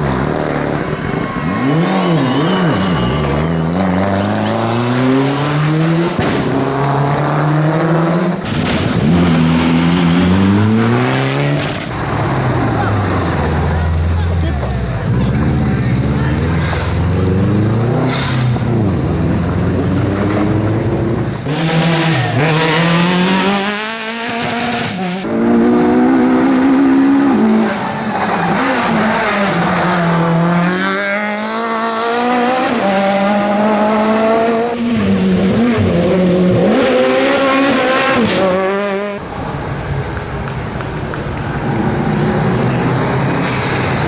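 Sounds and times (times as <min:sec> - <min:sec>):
tyre squeal: 0:00.0 - 0:04.7
rally car engines revving: 0:00.0 - 0:44.0.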